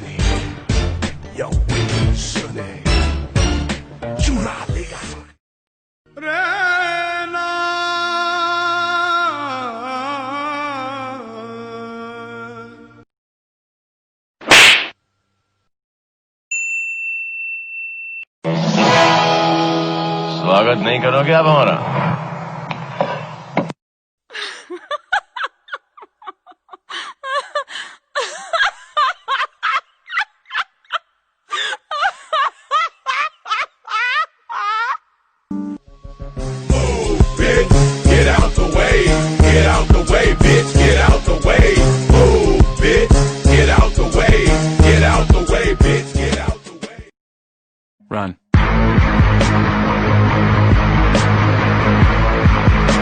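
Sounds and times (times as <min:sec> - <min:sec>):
music: 0:00.0 - 0:05.4, 0:11.2 - 0:13.0, 0:18.5 - 0:21.4, 0:35.5 - 0:47.1, 0:48.6 - 0:53.0
high-pitched cackling laughter: 0:24.6 - 0:35.0.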